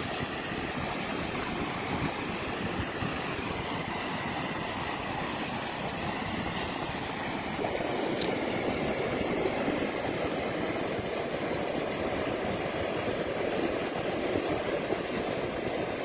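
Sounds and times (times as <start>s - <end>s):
ocean surf breaking: 0.0s - 16.0s.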